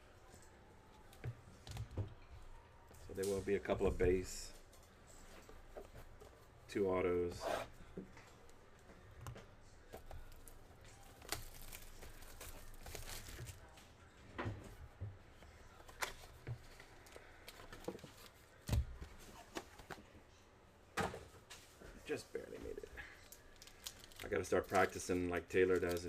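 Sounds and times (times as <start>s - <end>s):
card packaging tearing and crinkling: 10.2s - 13.6s, 23.3s - 25.0s.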